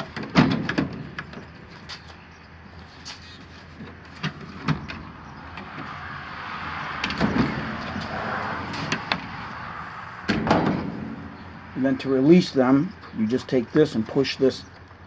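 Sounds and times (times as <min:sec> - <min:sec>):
heavy thud: 0:10.3 - 0:11.2.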